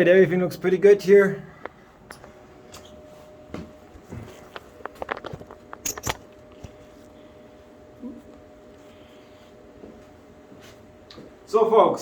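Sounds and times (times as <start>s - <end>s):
clicks and knocks of handling: 4.5s - 6.8s.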